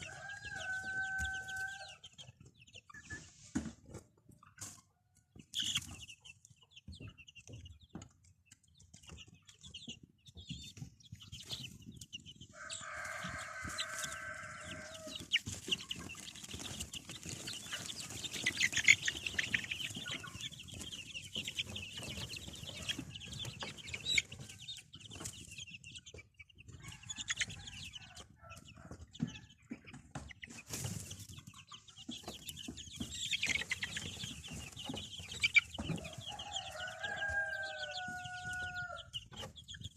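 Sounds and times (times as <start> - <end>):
long steady chicken call: 0.0 - 2.5, 12.4 - 25.4, 26.6 - 29.8, 32.4 - 39.9
chickens clucking: 0.0 - 39.9.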